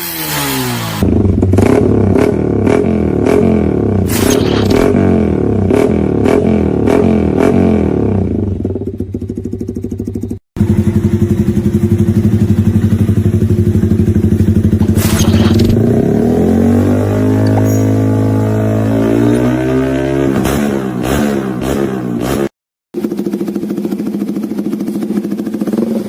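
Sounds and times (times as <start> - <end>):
motorcycle engine revving: 0.0 - 26.0
motorcycle idling: 8.0 - 15.0, 23.0 - 26.0.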